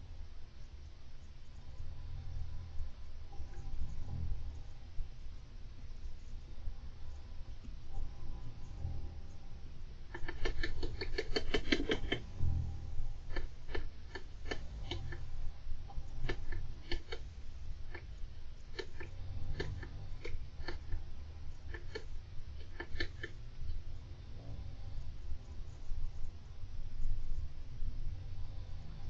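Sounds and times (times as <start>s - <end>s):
steady low hum: 0.0s - 29.0s
hamster clicks and taps: 10.1s - 12.3s, 16.2s - 17.3s, 18.7s - 21.0s, 21.7s - 23.4s.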